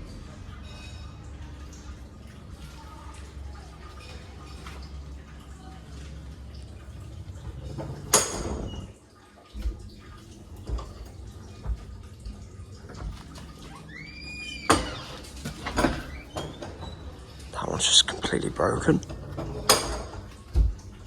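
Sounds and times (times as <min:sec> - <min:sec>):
door squeak: 0:08.1 - 0:09.0, 0:13.3 - 0:17.4.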